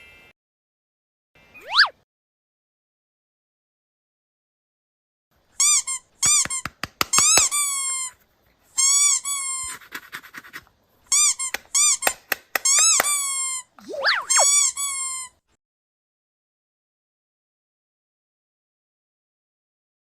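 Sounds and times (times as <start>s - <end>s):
high-pitched squeaks: 5.6s - 8.2s, 8.8s - 15.4s
sharp clicks: 6.4s - 7.6s, 11.4s - 13.2s.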